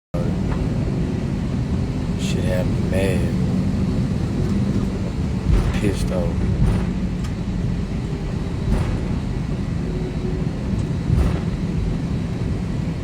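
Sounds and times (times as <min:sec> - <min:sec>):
jet airliner cabin rumble: 0:00.2 - 0:13.0.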